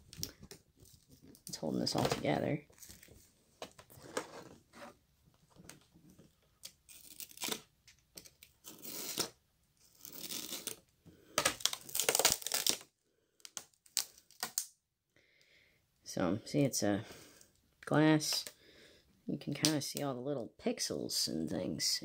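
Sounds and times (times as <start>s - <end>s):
plastic film peeling and tearing: 6.6s - 10.8s, 11.4s - 14.7s.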